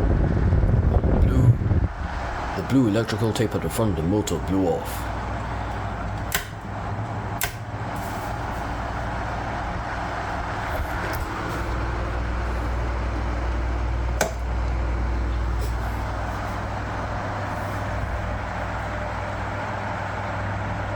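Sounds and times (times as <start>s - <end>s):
table fan running: 0.0s - 20.9s
sharp clicks: 6.1s - 6.6s, 7.4s - 7.7s.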